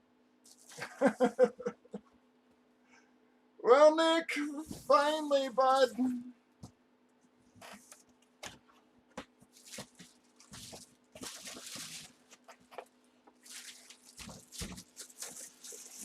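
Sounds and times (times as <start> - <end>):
packaging crinkling and rustling: 9.4 - 16.0.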